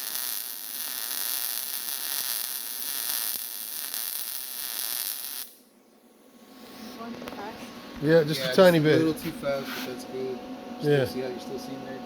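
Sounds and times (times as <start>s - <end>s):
welder arc crackling hiss: 0.0s - 5.6s.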